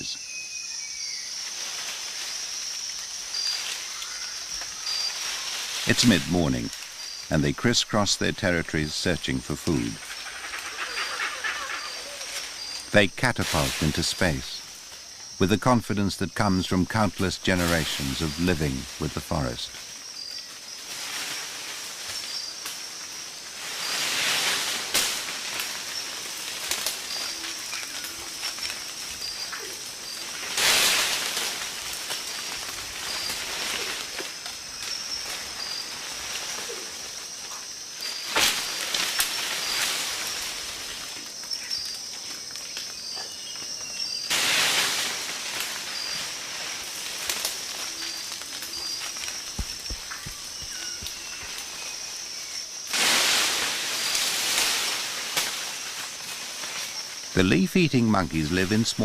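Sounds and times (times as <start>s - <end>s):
insect chorus chirping: 0.0s - 59.0s
leaves and branches shaking: 1.3s - 7.3s, 17.6s - 43.0s, 44.1s - 57.4s.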